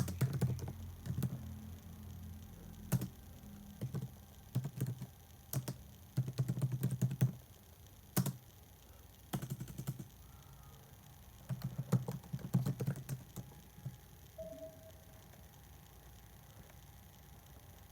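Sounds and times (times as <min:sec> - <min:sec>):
typing on a keyboard: 0:00.0 - 0:01.5, 0:02.8 - 0:07.4, 0:08.1 - 0:08.5, 0:09.3 - 0:10.2, 0:11.4 - 0:14.0.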